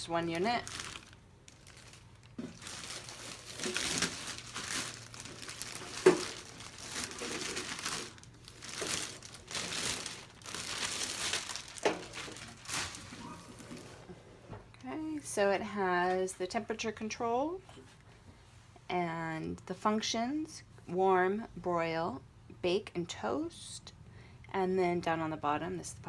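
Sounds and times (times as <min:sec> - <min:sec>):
packaging crinkling and rustling: 0:00.3 - 0:14.1.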